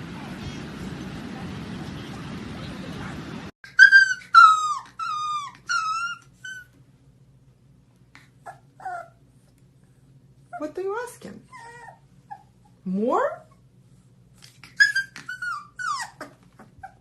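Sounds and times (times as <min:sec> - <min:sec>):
dog whining: 0:03.6 - 0:06.8, 0:08.2 - 0:09.2, 0:11.5 - 0:12.8, 0:14.4 - 0:17.0
faint dog whimpers: 0:03.7 - 0:06.7, 0:08.2 - 0:09.2, 0:11.4 - 0:13.6, 0:14.4 - 0:17.0.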